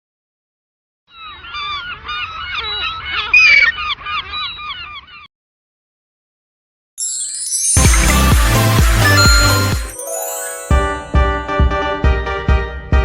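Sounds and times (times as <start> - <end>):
flock of birds calling: 1.1 - 5.3.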